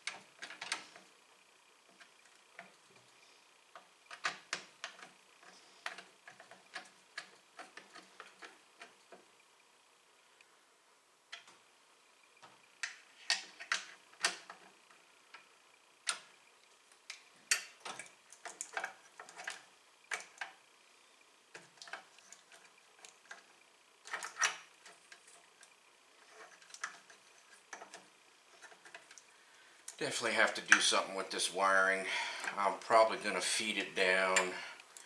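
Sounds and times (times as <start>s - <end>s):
small plastic and metal parts clicking: 0.0s - 1.0s, 3.7s - 9.2s, 12.4s - 14.7s, 16.9s - 20.6s, 21.5s - 30.0s.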